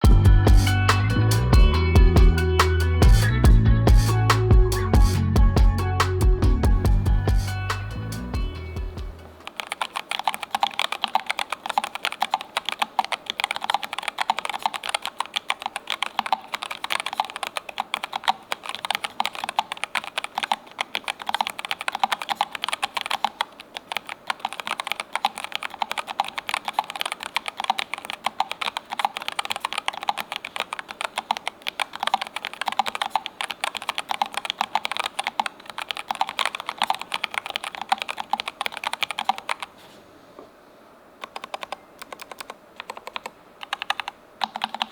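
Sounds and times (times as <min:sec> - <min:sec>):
fast mechanical keyboard typing: 0:09.4 - 0:39.7, 0:41.2 - 0:44.9.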